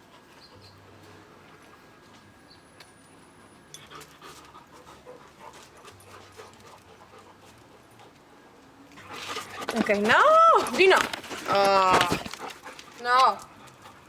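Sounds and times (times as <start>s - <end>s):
dog panting: 3.8s - 14.0s.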